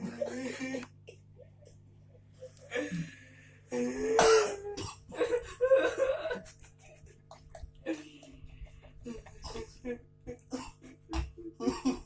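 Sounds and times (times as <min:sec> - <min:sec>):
low steady hum: 0:00.0 - 0:12.0
person coughing: 0:04.0 - 0:06.1.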